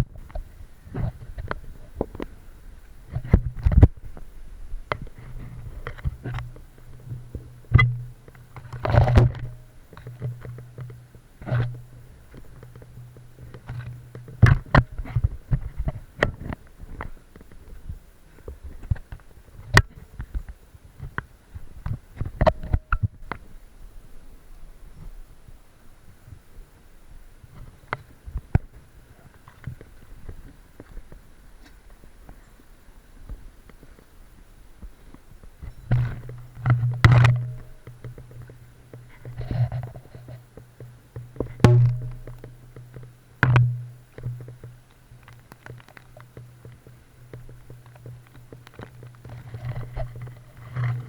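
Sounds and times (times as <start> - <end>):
low steady hum: 0.0 - 51.0
irregular knocks and clicks: 4.9 - 17.8, 35.6 - 51.0.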